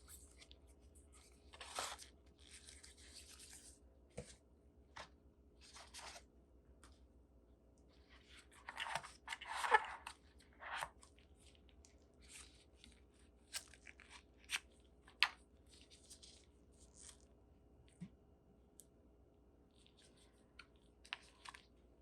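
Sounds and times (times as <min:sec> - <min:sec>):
plastic and cardboard crinkling: 0:08.2 - 0:17.3.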